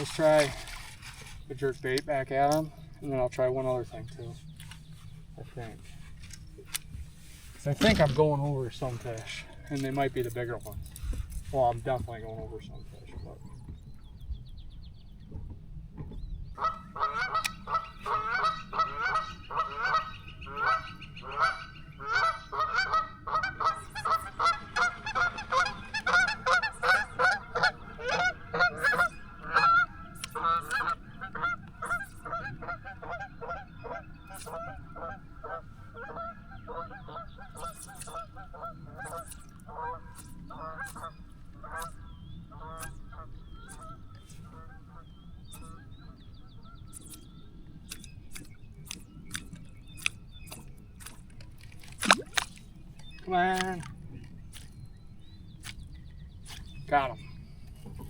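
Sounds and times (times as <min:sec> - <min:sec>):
geese honking: 0:16.6 - 0:46.8.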